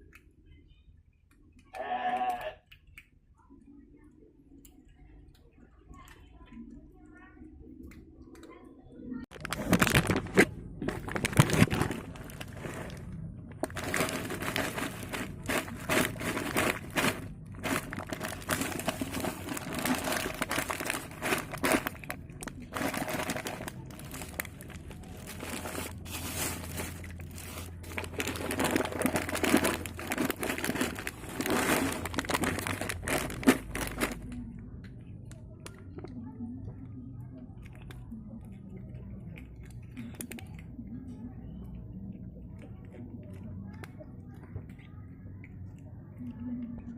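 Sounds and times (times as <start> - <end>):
plastic packaging crinkling: 9.3 - 34.4.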